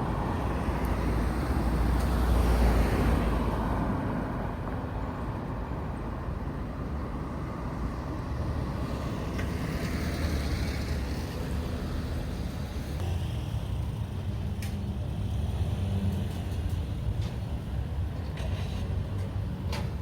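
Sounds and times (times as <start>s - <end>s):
vehicles passing: 0.0s - 20.0s.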